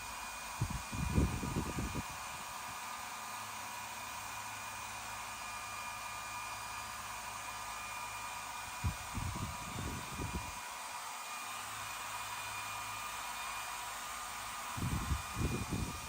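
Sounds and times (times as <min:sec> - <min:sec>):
electric motor whirring: 0:00.6 - 0:02.4, 0:08.8 - 0:10.5, 0:14.1 - 0:16.0.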